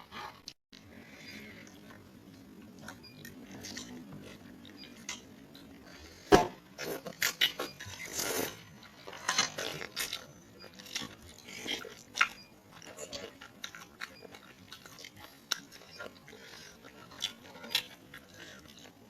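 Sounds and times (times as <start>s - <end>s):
chewing and biting: 0.1s - 19.0s.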